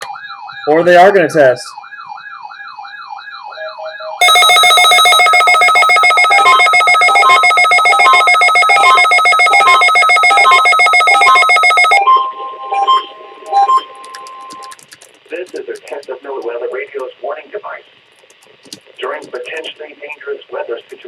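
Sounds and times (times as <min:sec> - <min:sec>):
harsh pulsing electronic alarm: 0:04.2 - 0:12.0
warbling siren tone: 0:04.2 - 0:12.0.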